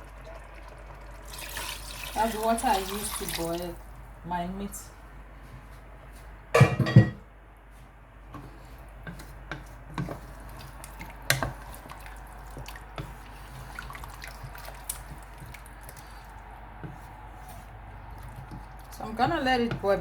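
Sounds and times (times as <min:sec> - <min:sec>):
stock pouring into soup: 0:00.0 - 0:03.6
liquid dripping and splashing: 0:00.0 - 0:03.7, 0:10.4 - 0:16.5, 0:18.0 - 0:19.1.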